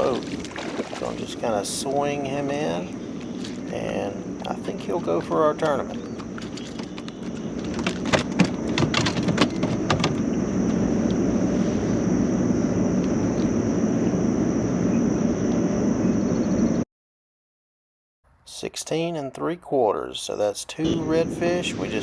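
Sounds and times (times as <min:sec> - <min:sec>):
high steady whine: 0:00.0 - 0:16.8, 0:20.8 - 0:22.0
steady rushing noise: 0:00.0 - 0:16.8, 0:20.9 - 0:22.0
sharp clicks and knocks: 0:06.2 - 0:10.2.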